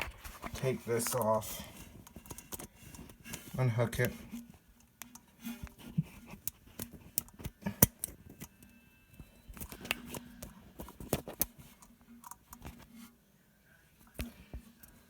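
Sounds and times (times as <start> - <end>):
metal and plastic parts rattling: 9.5 - 12.9.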